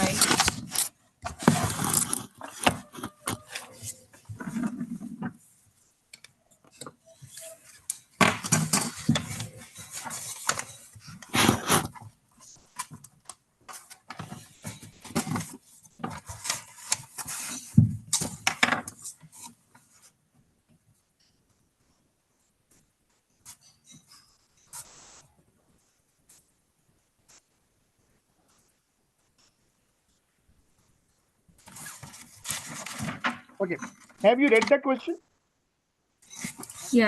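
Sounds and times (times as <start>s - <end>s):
objects clattering and scraping: 0.0s - 5.7s, 6.6s - 20.2s, 31.6s - 34.8s, 36.2s - 37.0s.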